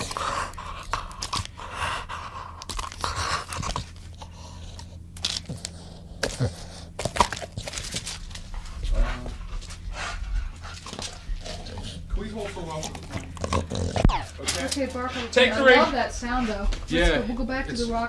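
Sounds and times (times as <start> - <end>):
crunching and clicking: 0.0 - 8.6
steady low hum: 0.0 - 18.0.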